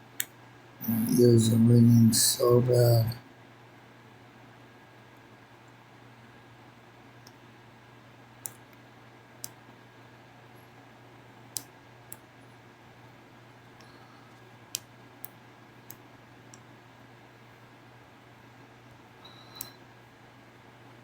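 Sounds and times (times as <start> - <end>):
steady low hum: 0.8 - 3.2.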